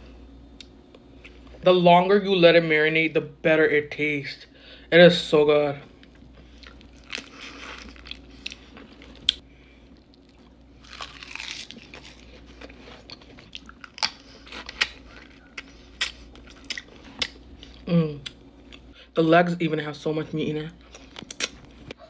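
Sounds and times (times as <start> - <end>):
crab shell crunching: 6.6 - 17.8.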